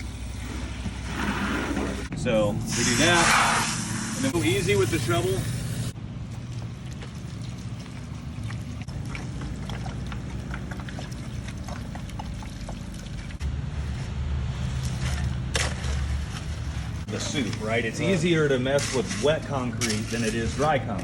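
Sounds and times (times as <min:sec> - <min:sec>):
wet concrete scrapes and slaps: 0:06.3 - 0:21.0.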